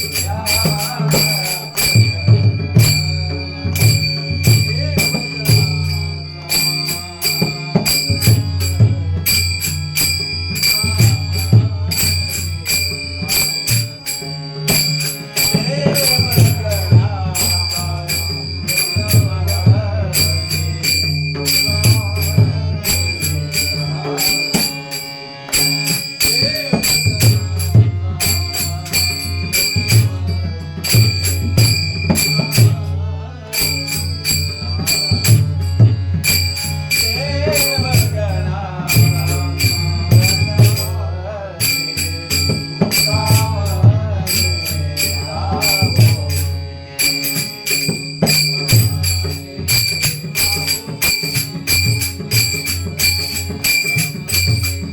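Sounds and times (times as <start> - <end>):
person singing: 0.0 - 8.6, 36.9 - 47.5
hand cymbals clashing: 33.5 - 41.0, 41.6 - 54.9.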